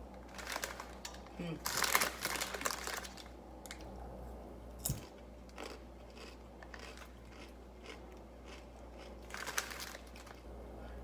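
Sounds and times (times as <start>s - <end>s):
person chewing crunchy chips: 5.0s - 10.6s.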